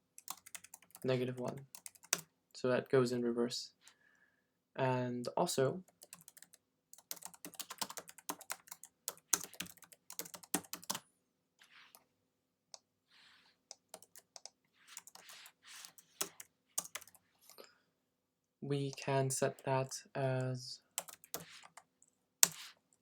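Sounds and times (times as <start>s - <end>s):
typing on a computer keyboard: 0.2s - 2.2s, 5.9s - 11.0s, 13.7s - 17.2s, 21.0s - 22.7s.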